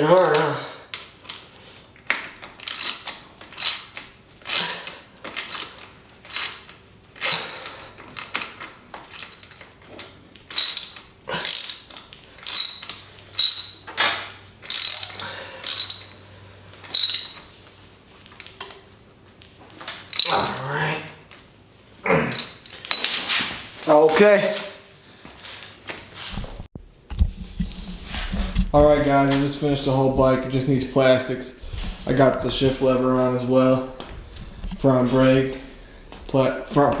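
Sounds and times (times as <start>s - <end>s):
hand tools ratcheting on metal: 0.0s - 0.5s, 2.6s - 13.9s, 14.6s - 16.2s, 16.9s - 17.4s, 20.1s - 20.7s, 22.3s - 23.2s.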